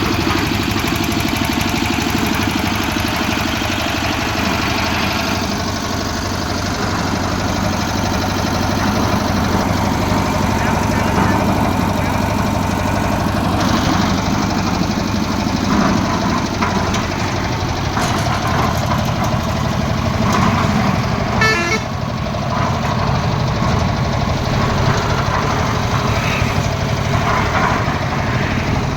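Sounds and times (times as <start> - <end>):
concrete mixer engine running: 0.0 - 28.9
horn-like toot: 21.4 - 21.9.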